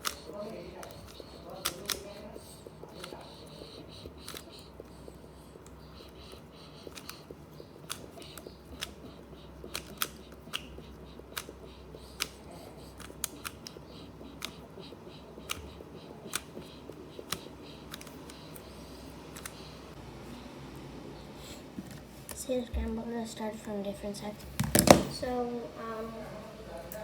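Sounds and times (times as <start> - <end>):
puzzle cube plastic clicks: 0.0 - 19.8.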